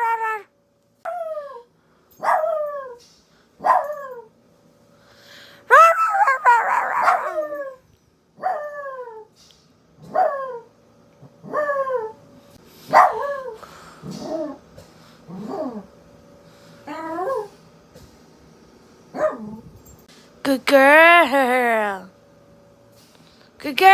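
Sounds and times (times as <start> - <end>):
dog howling: 0.0 - 0.5, 1.1 - 3.0, 5.7 - 7.8, 8.4 - 9.3, 11.4 - 12.2, 15.3 - 15.9, 16.9 - 17.6.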